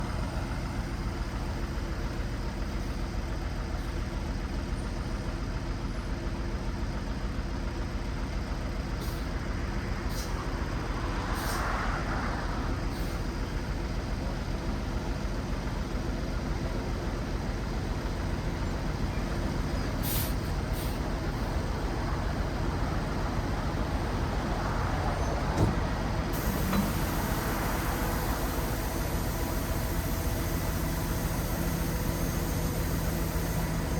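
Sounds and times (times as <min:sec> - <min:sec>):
diesel engine running: 0:00.0 - 0:33.9
brief hiss: 0:11.3 - 0:11.9, 0:19.9 - 0:21.1.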